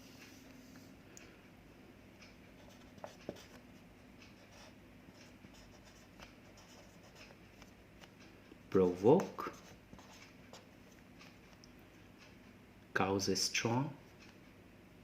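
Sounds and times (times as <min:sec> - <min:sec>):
pen scratching while writing: 0:04.5 - 0:07.7.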